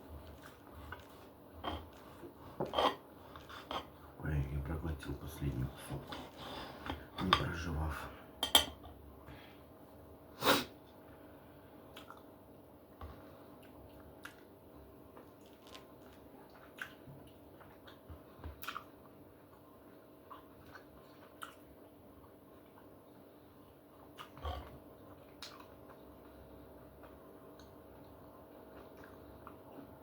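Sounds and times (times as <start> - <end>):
chewing steak: 0.1 - 4.1, 13.4 - 30.0.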